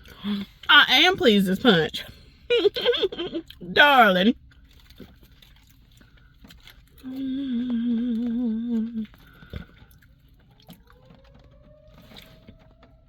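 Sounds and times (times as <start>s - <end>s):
woman humming with vibrato: 7.1s - 9.0s.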